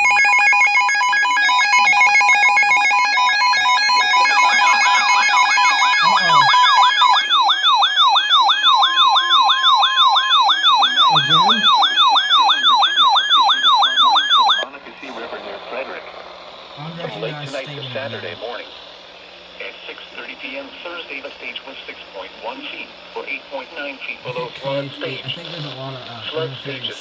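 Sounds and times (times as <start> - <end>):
beeping electronic alarm tones: 0.0 - 14.6
electronic siren yelp: 0.0 - 14.7.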